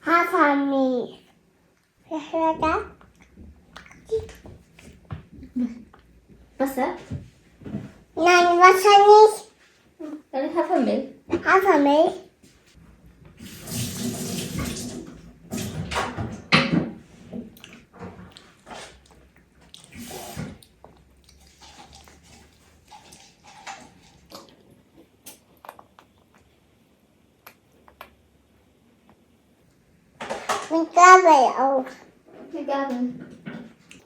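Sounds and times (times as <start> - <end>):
milk pouring into a cup: 21.3 - 24.3.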